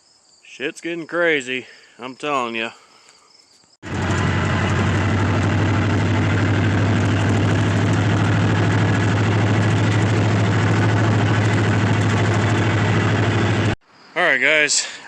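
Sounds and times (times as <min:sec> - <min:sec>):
vehicle engine idling: 0:03.8 - 0:13.8.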